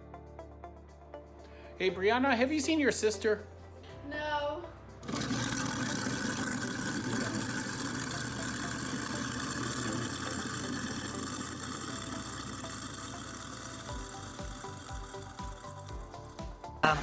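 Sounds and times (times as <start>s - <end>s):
garbage disposal motor grinding: 5.0s - 16.8s
background music with beat: 12.0s - 17.0s.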